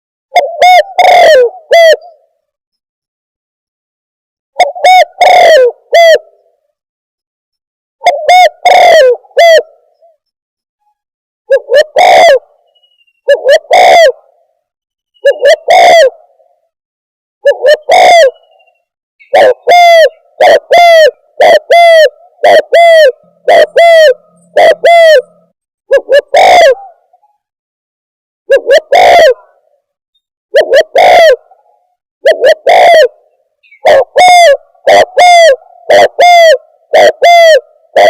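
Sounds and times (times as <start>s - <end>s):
distorted dove cooing recording: 0.3s - 2.5s, 4.6s - 6.6s, 8.0s - 10.2s, 11.5s - 12.6s, 13.2s - 14.5s, 15.2s - 16.6s, 17.4s - 27.5s, 28.5s - 29.9s, 30.5s - 38.0s.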